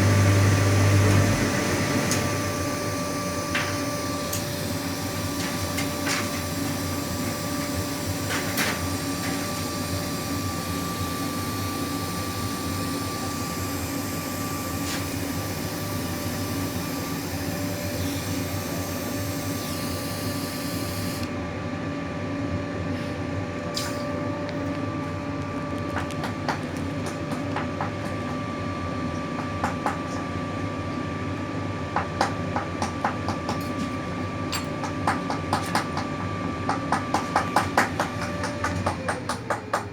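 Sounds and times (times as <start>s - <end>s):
machine motor humming: 0.0s - 21.4s, 23.7s - 39.9s.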